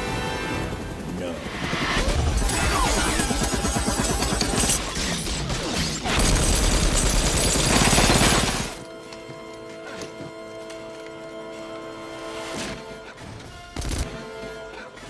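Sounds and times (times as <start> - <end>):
steady drone: 0.0 - 4.8
rapid gunfire: 1.3 - 8.8, 13.7 - 14.3
crashing and shattering: 2.4 - 8.8.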